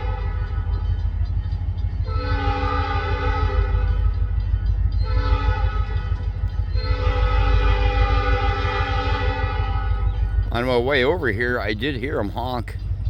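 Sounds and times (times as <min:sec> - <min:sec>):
locomotive air horn blasts: 0:00.0 - 0:00.8, 0:02.0 - 0:04.2, 0:05.0 - 0:10.3
low rumble: 0:00.0 - 0:13.0.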